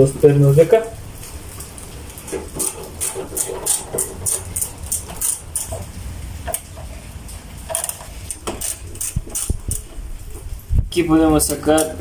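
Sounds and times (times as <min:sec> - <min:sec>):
ratchet clicking: 0:07.7 - 0:09.9.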